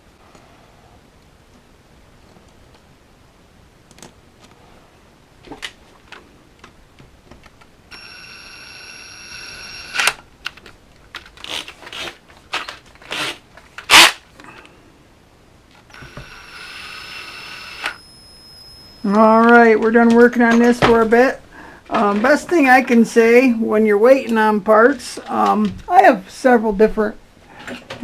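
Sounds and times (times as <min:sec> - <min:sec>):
steady high whine: 0:07.8 - 0:10.4, 0:14.4 - 0:21.5.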